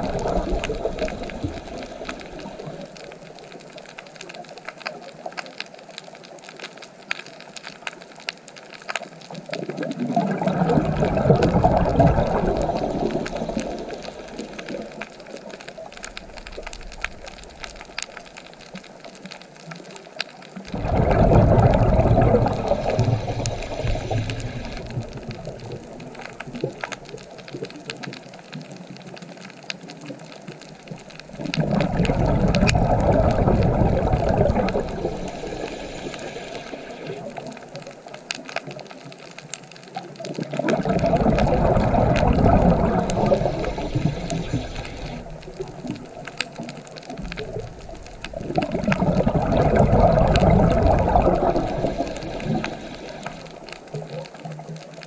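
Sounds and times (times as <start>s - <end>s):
ocean waves breaking on shore: 9.9s - 18.0s, 20.7s - 27.0s, 31.3s - 37.8s, 40.6s - 54.8s.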